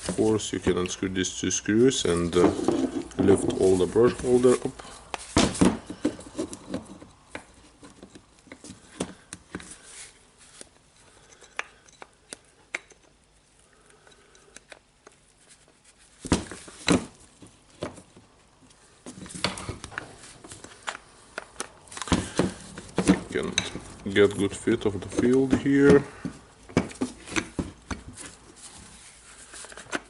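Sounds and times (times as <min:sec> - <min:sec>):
parts clicking and knocking: 0:10.6 - 0:15.2, 0:19.0 - 0:28.4.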